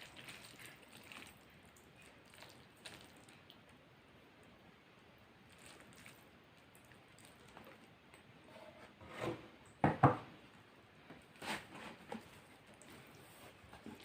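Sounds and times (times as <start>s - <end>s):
soft eating mouth noises: 0.0s - 3.8s, 5.5s - 8.5s.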